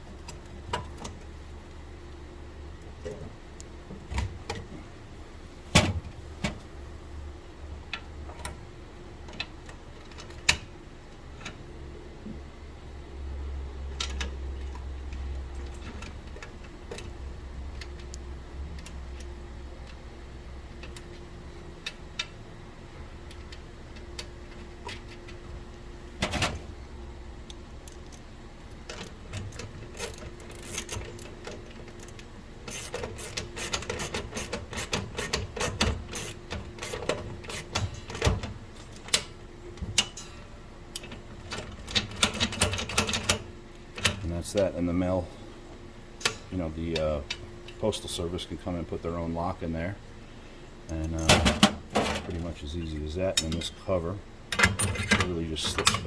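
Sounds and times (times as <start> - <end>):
metal lock clicking and rattling: 28.9 - 39.3, 54.5 - 56.0.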